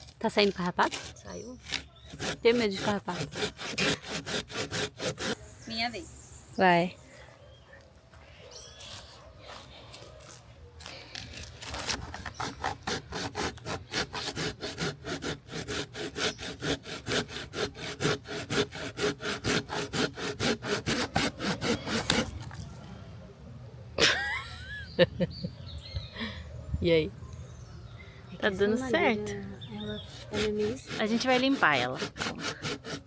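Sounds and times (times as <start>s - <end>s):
hand saw cutting wood: 0.0s - 5.4s, 11.6s - 22.5s, 30.0s - 33.0s.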